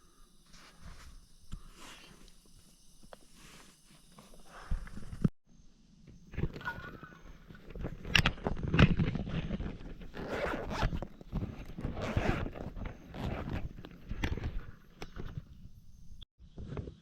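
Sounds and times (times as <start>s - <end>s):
zipper being pulled: 9.2s - 14.8s.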